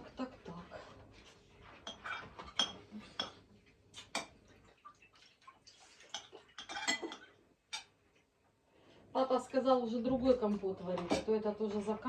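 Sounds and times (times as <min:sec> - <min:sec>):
dishes and utensils clinking: 0:01.1 - 0:04.6, 0:06.0 - 0:08.0, 0:10.2 - 0:12.0.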